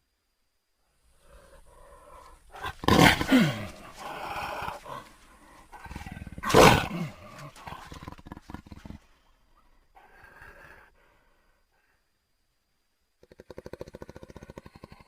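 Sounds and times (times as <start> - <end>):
big cat growling: 1.2 - 9.1
big cat roaring: 1.3 - 5.1, 5.7 - 9.0.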